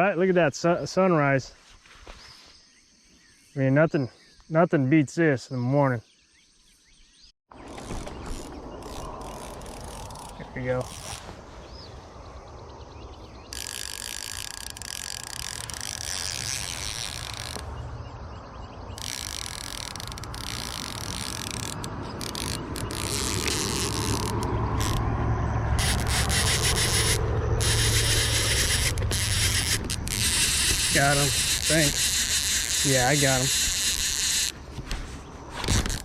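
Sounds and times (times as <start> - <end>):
fishing reel ratcheting: 8.3 - 11.2, 13.5 - 17.7, 19.0 - 25.1, 25.8 - 34.6, 35.7 - 36.0.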